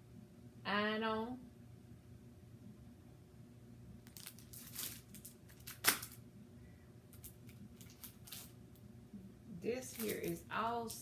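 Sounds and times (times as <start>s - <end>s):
craft sheets crinkling and rustling: 4.1s - 6.2s, 7.2s - 8.6s, 9.8s - 11.0s.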